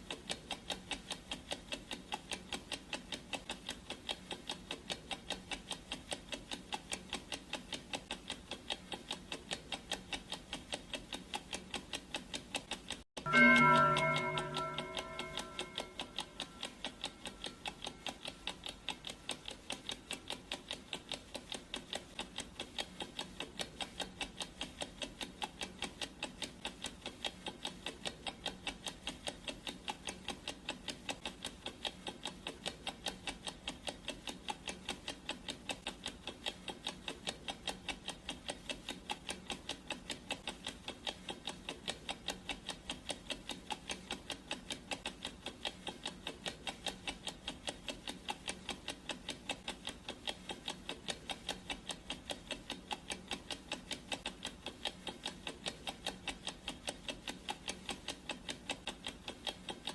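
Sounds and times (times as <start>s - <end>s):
clock ticking: 0.0s - 59.9s
ringing chime: 13.3s - 17.4s.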